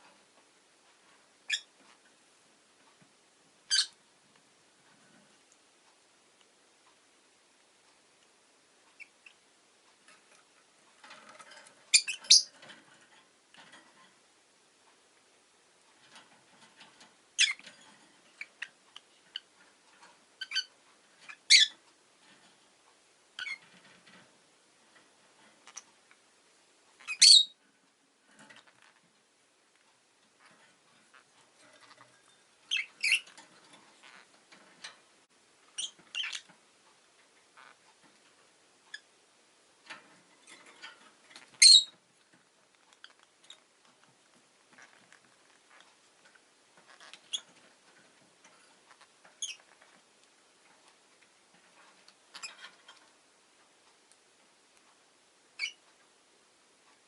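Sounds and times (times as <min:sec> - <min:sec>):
lovebird chirping: 0:01.4 - 0:01.7, 0:03.7 - 0:04.0, 0:08.9 - 0:09.4, 0:11.9 - 0:12.6, 0:17.4 - 0:17.7, 0:20.4 - 0:21.8, 0:23.4 - 0:23.6, 0:27.0 - 0:27.6, 0:31.1 - 0:33.3, 0:35.7 - 0:36.5, 0:41.4 - 0:42.0, 0:49.4 - 0:49.7, 0:55.6 - 0:55.8.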